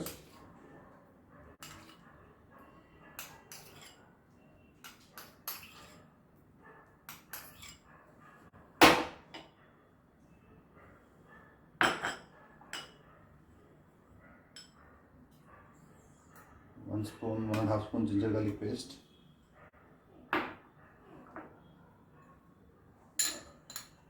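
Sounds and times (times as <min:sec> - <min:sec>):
spoon clinking against a bowl: 0:03.1 - 0:04.0, 0:04.8 - 0:06.0, 0:07.1 - 0:07.8, 0:23.2 - 0:24.0.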